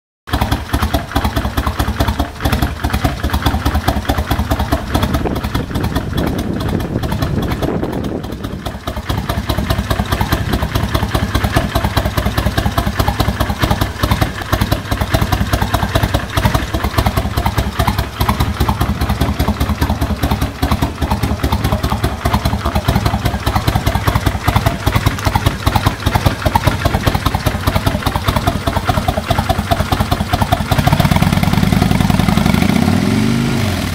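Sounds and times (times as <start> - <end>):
motorcycle engine idling: 0.3 - 32.9.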